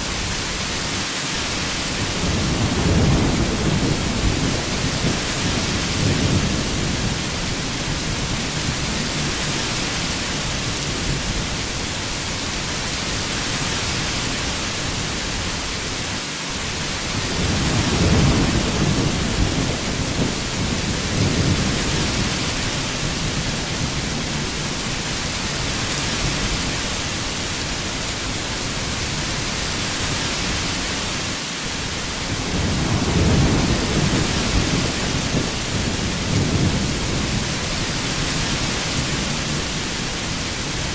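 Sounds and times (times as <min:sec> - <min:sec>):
heavy rain falling: 0:00.0 - 0:40.9
thunder rumbling: 0:01.9 - 0:11.7, 0:17.1 - 0:26.8, 0:31.8 - 0:40.9.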